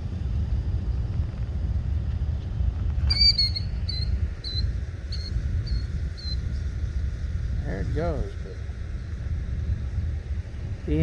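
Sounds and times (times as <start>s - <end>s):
wind rumble on microphone: 0.0s - 11.0s
bird shrill alarm calls: 3.1s - 6.4s.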